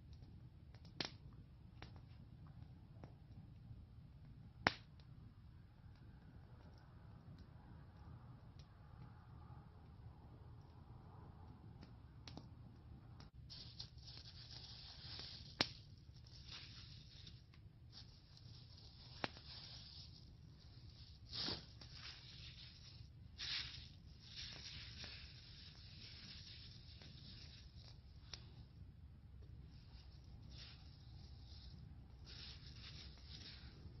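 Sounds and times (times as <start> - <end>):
faint scraping and rustling: 13.3 - 34.0.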